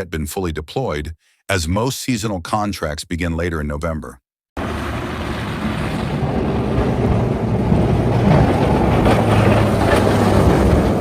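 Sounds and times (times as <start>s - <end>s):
vehicle rumble: 4.6s - 11.0s.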